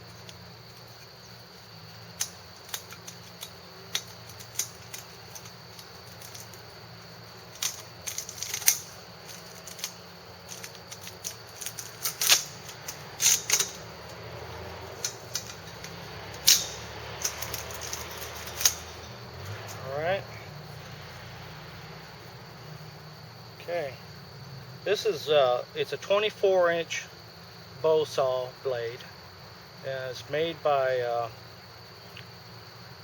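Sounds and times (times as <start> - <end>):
blade cover clicks and rattles: 2.2 - 6.7, 7.3 - 13.9, 15.0 - 19.1.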